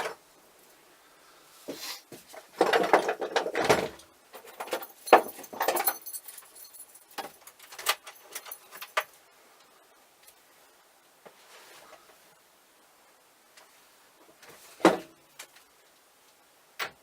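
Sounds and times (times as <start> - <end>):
metal tools clinking and rattling: 4.3 - 9.2.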